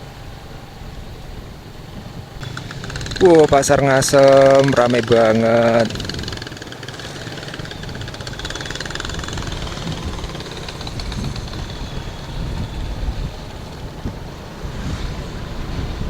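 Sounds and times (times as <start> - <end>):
street noise: 0.0 - 16.0
vehicle engine running: 0.4 - 16.0.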